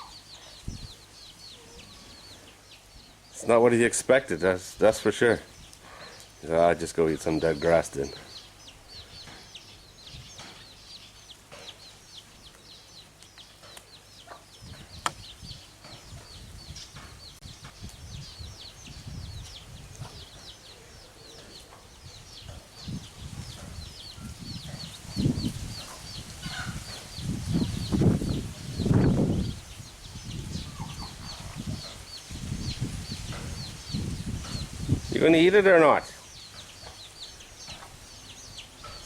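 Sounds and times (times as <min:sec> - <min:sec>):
chickens clucking: 0:00.0 - 0:18.0, 0:18.6 - 0:39.0.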